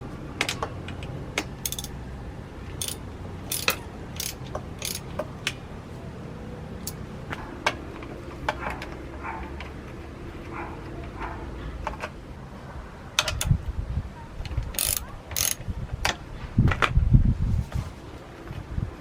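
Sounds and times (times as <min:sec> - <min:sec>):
metallic clicks of hand tools: 0:00.4 - 0:02.0, 0:02.7 - 0:05.6, 0:06.8 - 0:07.0, 0:14.7 - 0:16.2.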